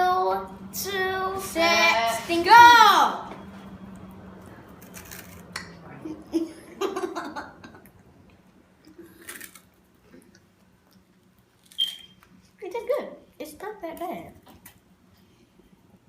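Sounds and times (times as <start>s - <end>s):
crunchy snacks being chewed: 4.7s - 5.5s, 8.8s - 12.1s.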